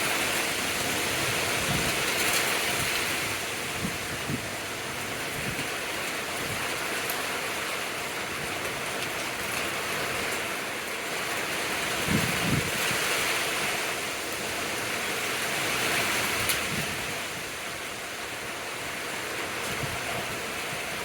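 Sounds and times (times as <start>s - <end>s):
heavy rain pouring: 0.0s - 21.0s.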